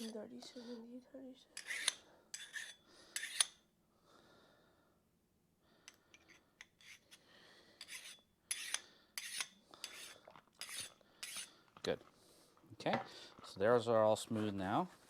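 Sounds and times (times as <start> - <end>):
hand file scraping metal: 1.6 - 3.6, 6.1 - 7.2, 7.8 - 11.6.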